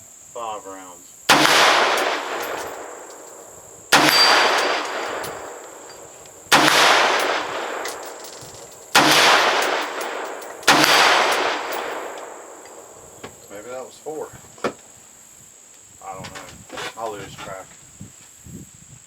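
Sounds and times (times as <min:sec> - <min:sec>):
rifle shots echoing: 0:01.3 - 0:13.8.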